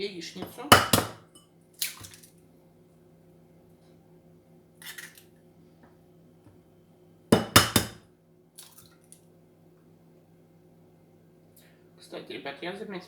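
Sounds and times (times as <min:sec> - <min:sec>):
kitchenware clattering and clinking: 0:00.4 - 0:01.4, 0:07.4 - 0:08.0.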